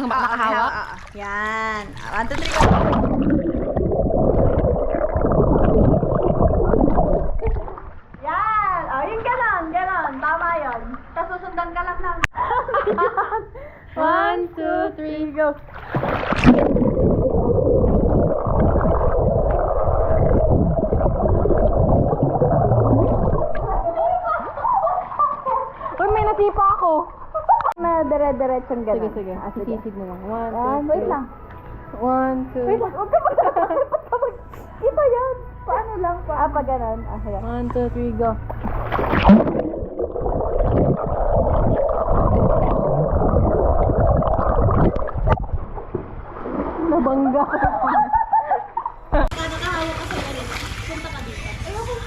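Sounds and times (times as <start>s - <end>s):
muffled underwater rushing and bubbling: 1.8s - 8.3s, 15.7s - 25.2s, 37.7s - 47.5s.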